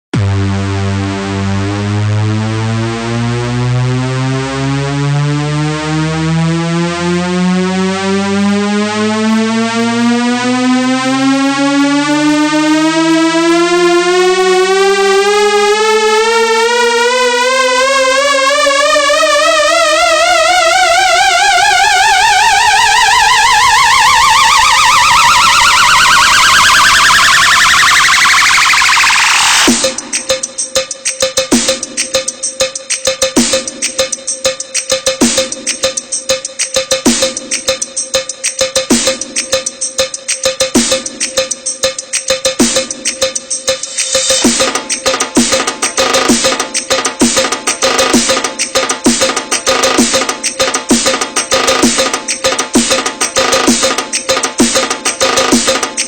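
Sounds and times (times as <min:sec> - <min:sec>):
rising synthesized test tone: 0:00.2 - 0:30.1.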